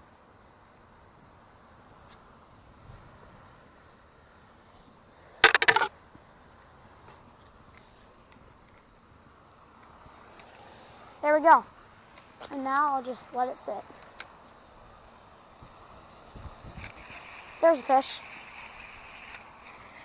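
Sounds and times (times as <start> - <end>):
insects buzzing: 0.0 - 20.0
rapid clicking or rattling: 16.8 - 20.0.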